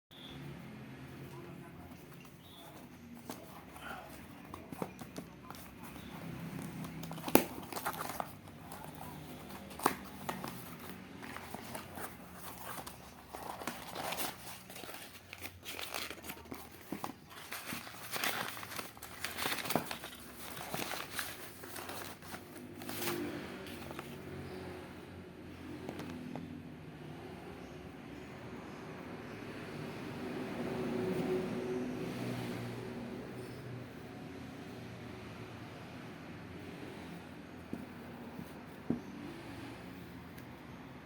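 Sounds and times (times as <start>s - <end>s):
packaging crinkling and tearing: 6.8s - 23.2s.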